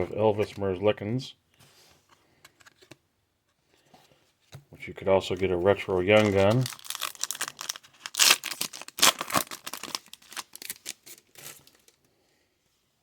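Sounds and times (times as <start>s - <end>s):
cards rustling and scraping: 1.6s - 4.6s, 5.3s - 12.0s.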